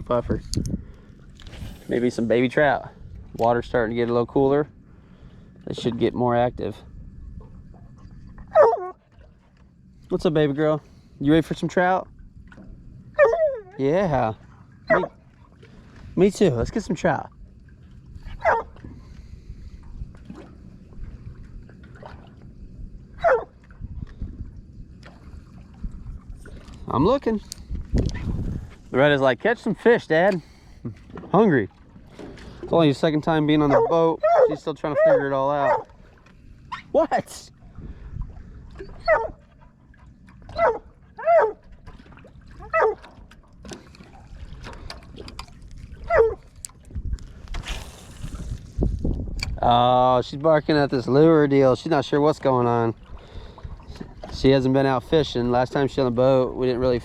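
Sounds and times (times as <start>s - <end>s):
wind noise: 0.0s - 3.9s, 22.8s - 29.0s, 44.4s - 50.1s
low water noise: 0.0s - 57.0s
young dog yelping: 8.5s - 9.0s, 13.2s - 13.8s, 14.9s - 15.2s, 18.4s - 18.7s, 23.2s - 23.5s, 33.7s - 35.9s, 38.8s - 39.4s, 40.5s - 41.6s, 42.6s - 43.0s, 46.1s - 46.4s.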